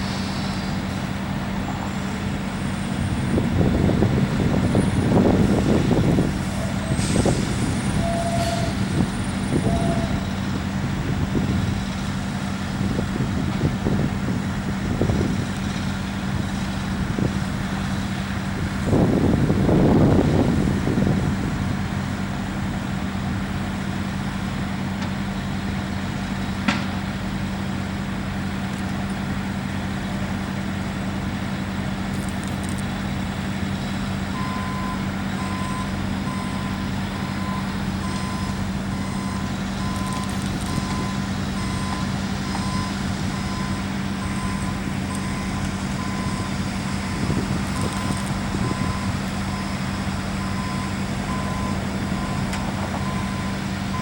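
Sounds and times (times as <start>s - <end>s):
diesel truck engines running: 0.0s - 54.0s
distant highway traffic: 0.0s - 54.0s
truck reversing alarm beeping: 1.6s - 13.0s, 32.1s - 33.3s, 33.9s - 54.0s.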